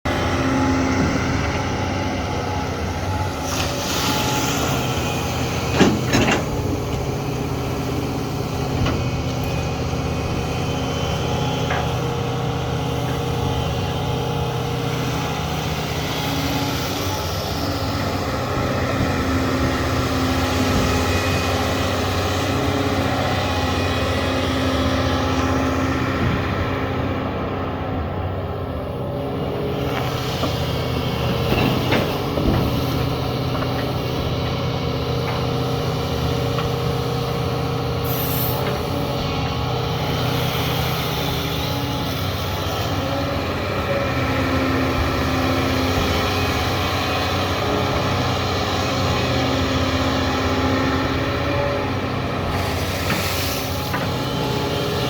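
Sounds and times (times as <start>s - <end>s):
excavator diesel engine running: 0.0s - 55.0s
hiss: 38.0s - 38.6s, 52.5s - 53.8s.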